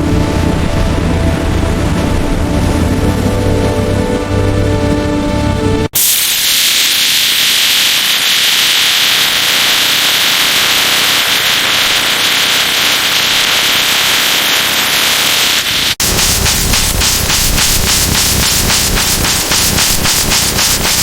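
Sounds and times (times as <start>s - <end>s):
loud steady hissing: 6.0s - 21.0s.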